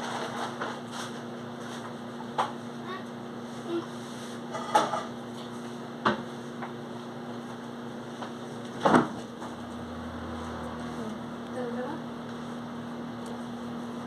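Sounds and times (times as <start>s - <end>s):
steady low hum: 0.6s - 14.0s
kitchen items knocking and clattering: 4.5s - 5.2s.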